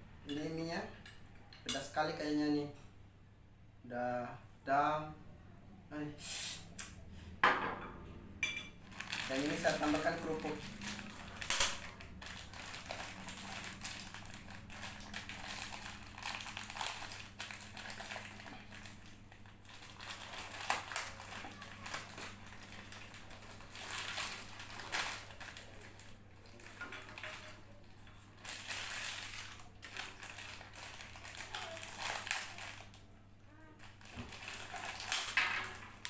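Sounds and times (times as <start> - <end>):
crackers crunching by hand: 8.8 - 33.1, 33.8 - 36.0.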